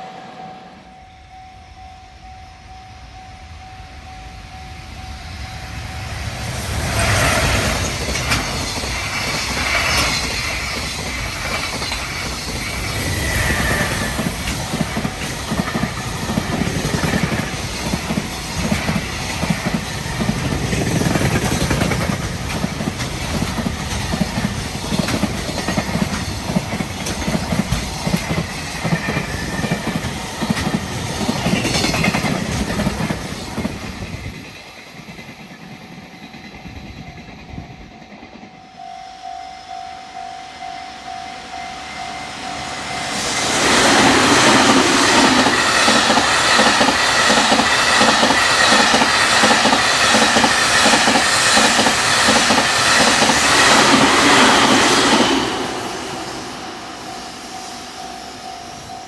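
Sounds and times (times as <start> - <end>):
electric locomotive motor whine: 0.0 - 59.0
wheels clacking over rail joints: 7.0 - 35.6, 42.7 - 57.0.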